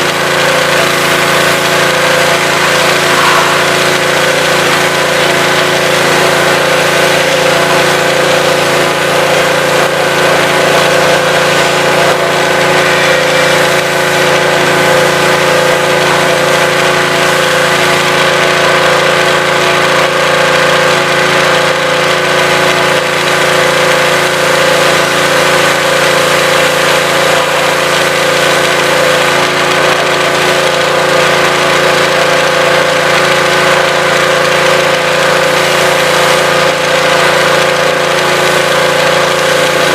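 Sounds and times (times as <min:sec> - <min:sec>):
pressure washer engine running: 0:00.0 - 0:39.9.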